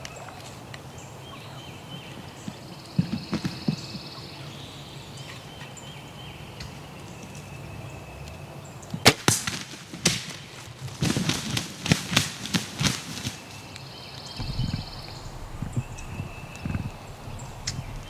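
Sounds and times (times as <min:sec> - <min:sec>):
bird flopping and wing flutters: 0:09.4 - 0:13.6.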